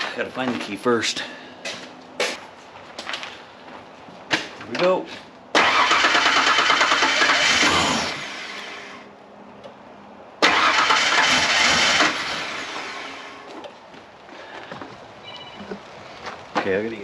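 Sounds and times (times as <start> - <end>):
starter motor cranking engine: 5.6 - 9.0, 10.4 - 13.3.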